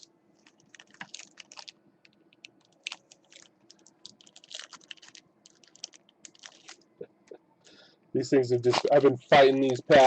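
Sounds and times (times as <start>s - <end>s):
foil wrappers crinkling: 0.0s - 1.8s, 2.4s - 6.9s.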